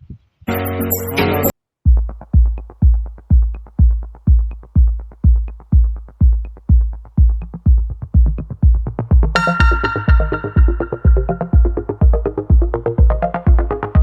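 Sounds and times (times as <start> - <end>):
electronic dance music: 0.5 - 14.0
deep kick drum: 1.8 - 14.0
synth melody: 9.3 - 14.0.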